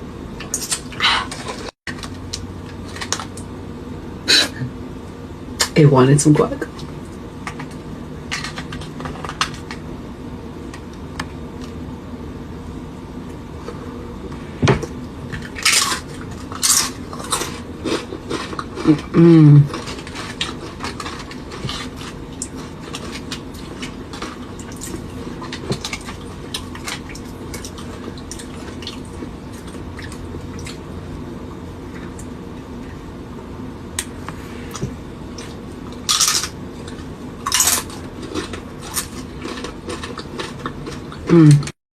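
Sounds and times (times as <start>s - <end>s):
rustling or crunching bursts: 15.4s - 30.8s, 35.4s - 41.6s.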